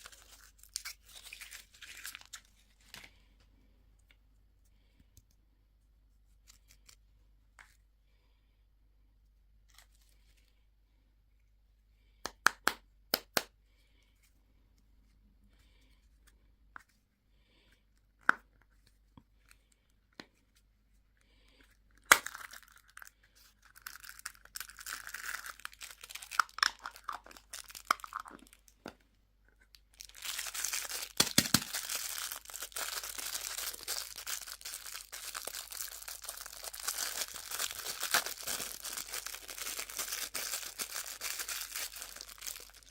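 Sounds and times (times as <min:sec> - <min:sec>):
wrapper tearing and crinkling: 0:00.0 - 0:03.0, 0:22.1 - 0:28.5, 0:29.9 - 0:42.9.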